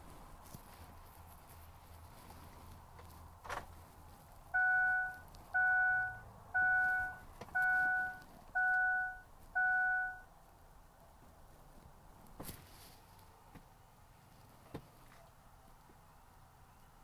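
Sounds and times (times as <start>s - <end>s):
dashboard warning chime beeping: 4.6s - 10.3s.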